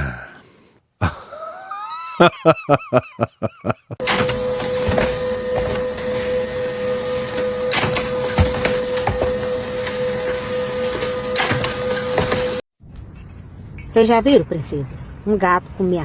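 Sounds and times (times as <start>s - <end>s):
clicks and knocks: 4.0s - 12.6s
small machine whirring: 4.0s - 12.6s.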